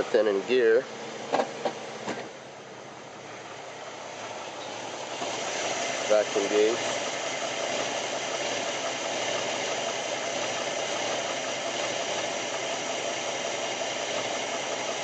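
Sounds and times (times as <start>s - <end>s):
car engine running: 0.0s - 15.0s
rapid rattling engine knock: 5.1s - 15.0s.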